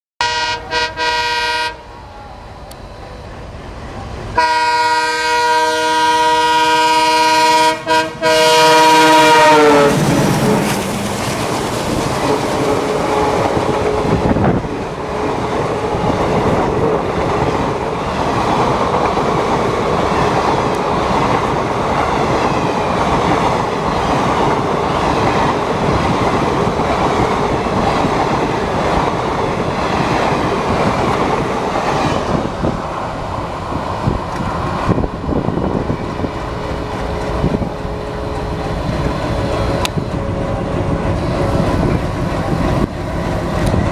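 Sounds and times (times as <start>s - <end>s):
locomotive horn: 0.2s - 2.0s, 4.4s - 10.7s, 12.3s - 14.4s.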